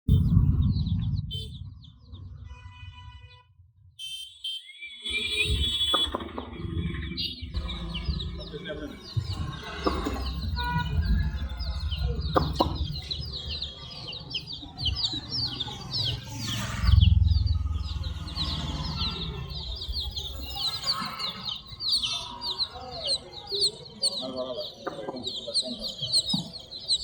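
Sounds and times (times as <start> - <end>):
baby chicks peeping: 0.1 - 3.4, 5.0 - 27.0
low rumble: 0.1 - 4.0, 6.4 - 20.8.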